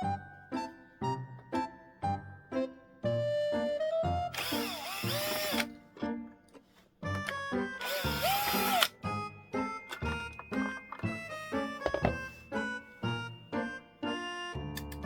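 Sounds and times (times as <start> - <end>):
background music with keyboard notes: 0.0 - 15.0
small power tool motor: 4.4 - 5.7, 7.8 - 9.0.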